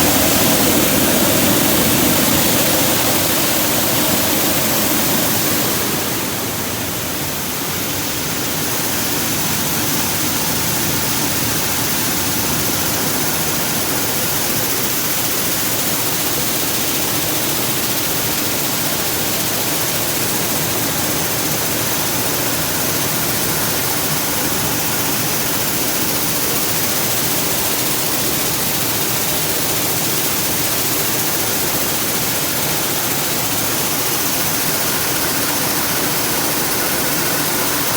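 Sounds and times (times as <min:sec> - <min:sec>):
combine harvester running: 0:00.0 - 0:14.0.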